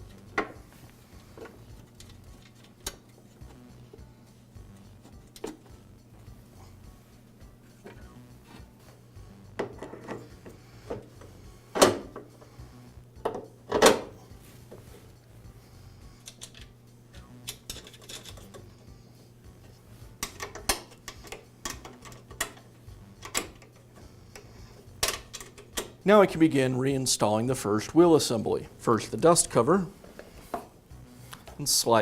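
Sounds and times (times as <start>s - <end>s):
metal parts and tools clinking: 17.4s - 18.6s.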